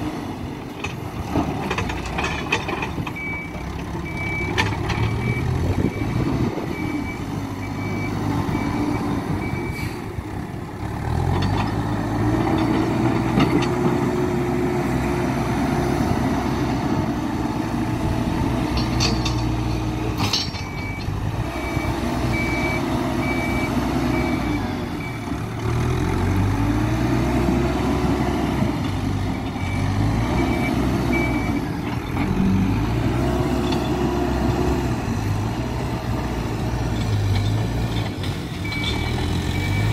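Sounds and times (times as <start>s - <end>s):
diesel engine revving under load: 0.0s - 39.9s
reversing alarm beeping: 3.2s - 9.9s, 20.5s - 25.3s, 29.3s - 31.8s, 38.6s - 39.9s
sharp metallic knocks: 18.6s - 21.1s.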